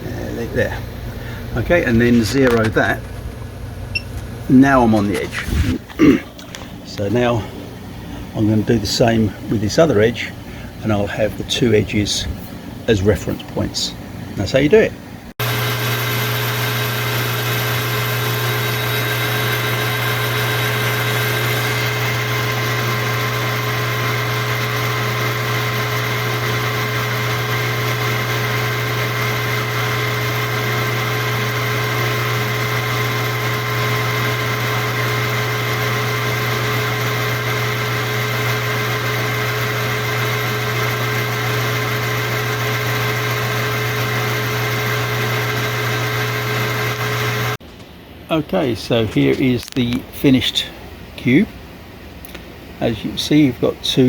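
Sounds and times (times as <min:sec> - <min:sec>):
electric motor humming: 0:15.4 - 0:47.6.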